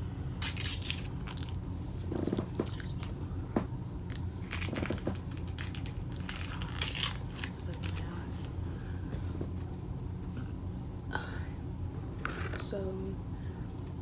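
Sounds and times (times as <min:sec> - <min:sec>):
steady low hum: 0:00.0 - 0:14.0
crisp crunches: 0:00.4 - 0:01.6, 0:04.4 - 0:08.1.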